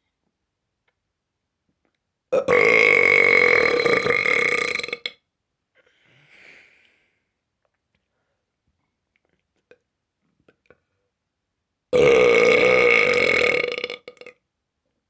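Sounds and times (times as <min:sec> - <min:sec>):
loud human burp: 0:02.3 - 0:05.2, 0:11.9 - 0:14.4
faint breathy hiss: 0:05.8 - 0:07.4.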